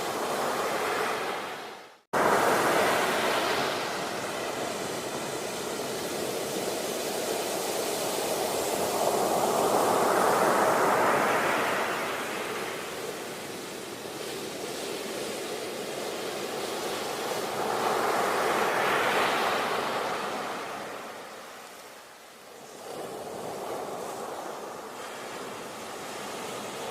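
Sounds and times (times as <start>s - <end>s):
ocean waves breaking on shore: 0.0s - 26.9s.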